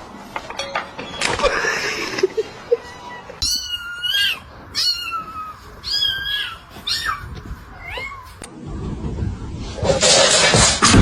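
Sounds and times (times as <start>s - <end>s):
cat meowing: 3.1s - 8.4s
low rumbling noise: 4.4s - 11.0s.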